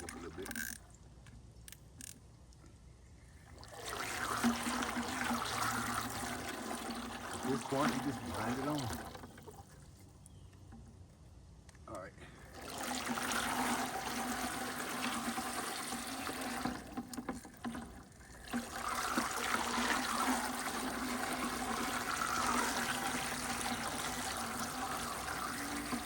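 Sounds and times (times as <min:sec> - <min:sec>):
fishing reel cranking: 0:00.0 - 0:00.9
water trickling and splashing: 0:03.4 - 0:10.8, 0:12.5 - 0:26.0.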